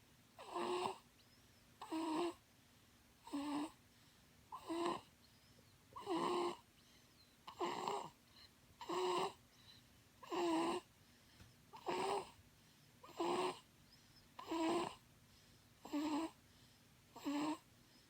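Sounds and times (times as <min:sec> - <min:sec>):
quiet breaths: 0:00.0 - 0:18.0
person snoring: 0:07.5 - 0:08.1, 0:10.2 - 0:10.9, 0:11.8 - 0:12.4, 0:13.0 - 0:13.6, 0:15.8 - 0:16.4, 0:17.2 - 0:17.6.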